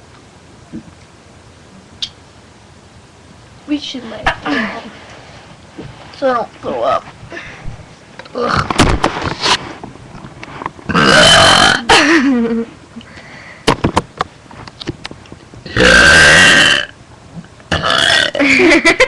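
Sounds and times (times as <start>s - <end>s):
girl burping loudly: 8.3s - 8.7s, 10.9s - 12.2s, 15.7s - 17.0s, 17.7s - 18.7s.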